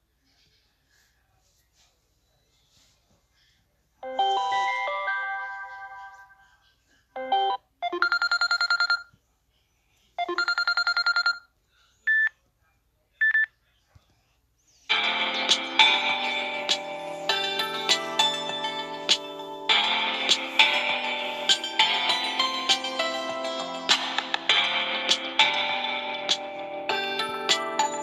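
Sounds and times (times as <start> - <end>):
phone ringtone chime notes: 4.0 - 6.3, 14.9 - 28.0
rapid trilling ringtone tune: 7.2 - 9.0, 10.2 - 11.4, 14.9 - 28.0.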